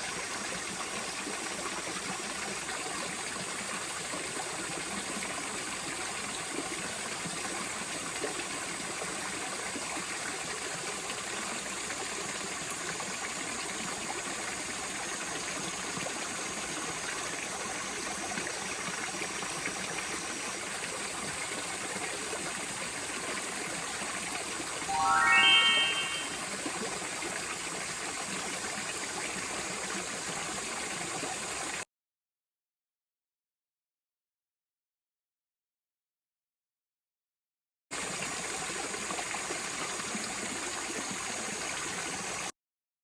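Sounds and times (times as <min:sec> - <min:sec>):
flowing water rushing: 0:00.1 - 0:31.8.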